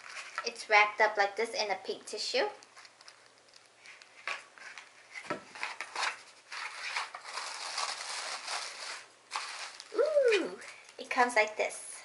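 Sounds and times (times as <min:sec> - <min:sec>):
tissue paper rustling and crinkling: 0:03.8 - 0:10.8.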